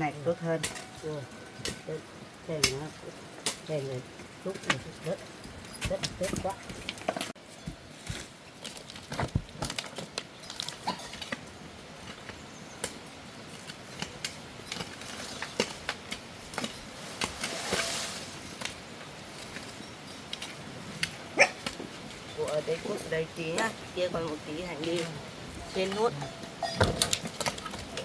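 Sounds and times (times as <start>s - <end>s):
knocks and scrapes in soil: 0.0s - 28.0s
scraping rush: 16.7s - 18.6s.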